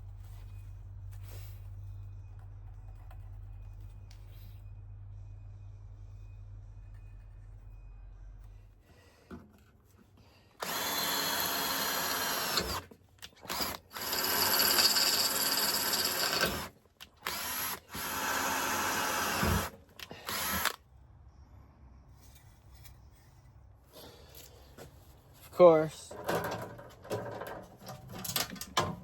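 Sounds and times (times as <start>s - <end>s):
electric power tool motor: 10.6s - 20.8s.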